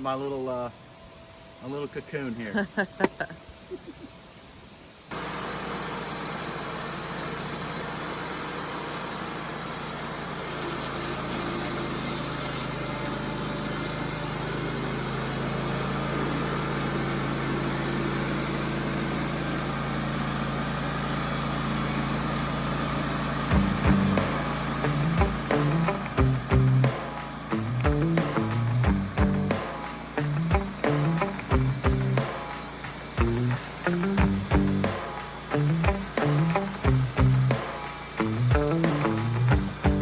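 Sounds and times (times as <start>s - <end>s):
band sawmill running: 5.1s - 40.0s
plucked music: 23.5s - 32.4s, 33.2s - 37.6s, 38.2s - 40.0s.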